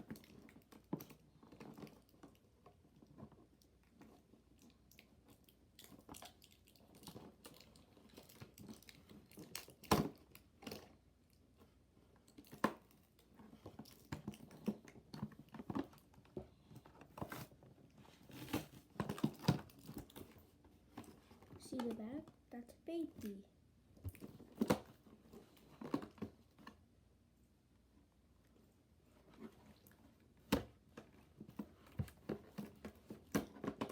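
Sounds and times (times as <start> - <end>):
packaging crinkling and rustling: 0.0 - 11.4, 12.2 - 21.8.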